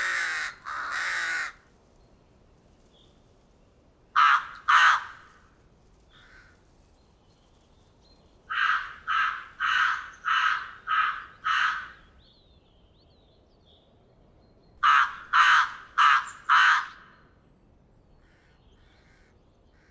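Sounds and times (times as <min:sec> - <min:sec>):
crow cawing: 0:00.0 - 0:01.6, 0:04.2 - 0:05.4, 0:06.1 - 0:06.6, 0:08.5 - 0:12.2, 0:14.8 - 0:17.2
distant crow caws: 0:00.0 - 0:01.7, 0:04.2 - 0:06.7, 0:08.5 - 0:12.2, 0:14.8 - 0:17.4, 0:18.2 - 0:19.9.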